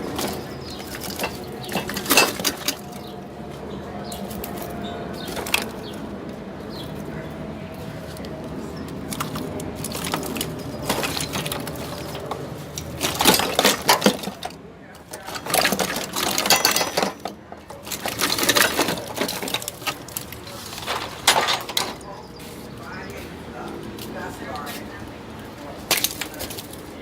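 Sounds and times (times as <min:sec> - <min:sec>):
plastic connectors clattering and clicking: 0:00.0 - 0:03.1, 0:09.0 - 0:22.0, 0:25.9 - 0:26.9.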